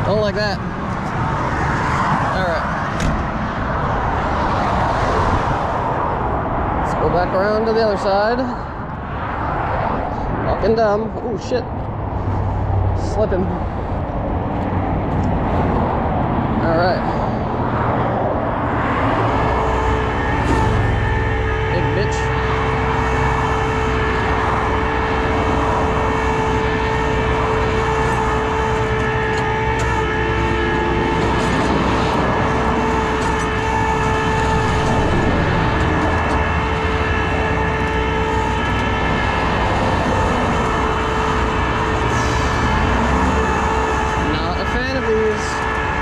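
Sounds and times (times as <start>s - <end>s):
constant whine: 0.0s - 46.0s
tow truck engine running: 11.4s - 46.0s.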